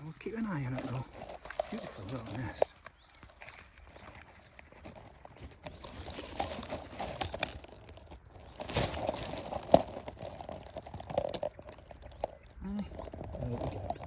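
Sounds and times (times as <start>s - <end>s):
leaves and twigs rustling: 0.0s - 14.0s.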